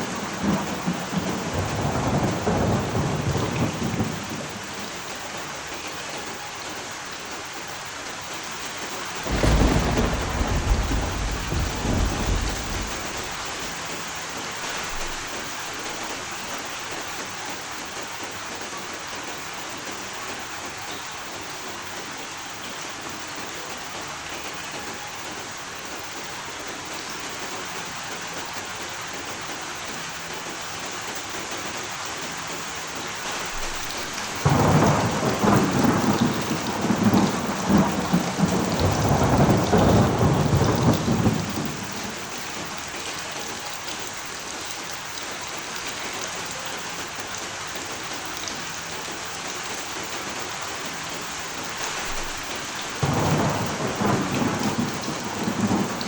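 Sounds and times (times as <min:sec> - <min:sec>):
thunderclap rumbling: 0:00.0 - 0:05.3, 0:09.2 - 0:16.2, 0:33.3 - 0:43.7, 0:51.9 - 0:56.0
heavy rain hissing: 0:00.0 - 0:56.0.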